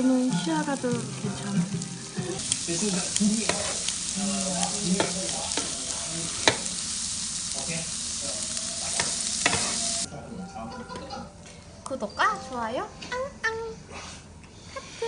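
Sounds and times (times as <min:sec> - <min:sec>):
food sizzling in a frying pan: 0:00.0 - 0:10.1.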